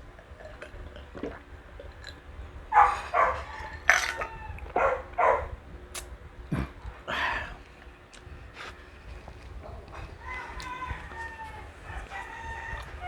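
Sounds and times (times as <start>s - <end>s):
dog barking: 2.7s - 5.6s.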